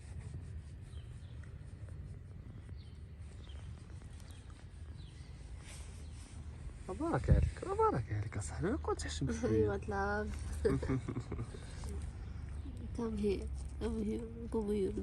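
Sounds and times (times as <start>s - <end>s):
low background rumble: 0.0s - 15.0s
faint bird chirps: 0.5s - 6.6s.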